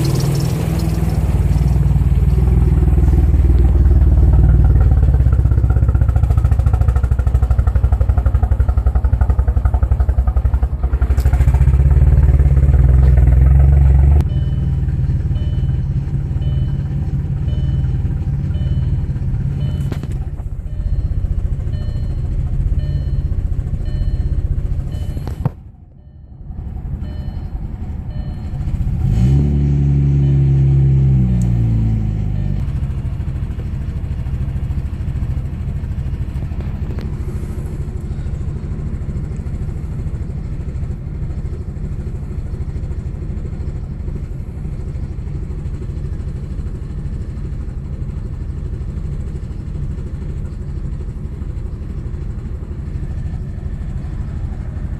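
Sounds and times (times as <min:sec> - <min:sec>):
car engine running: 0:00.0 - 0:54.9.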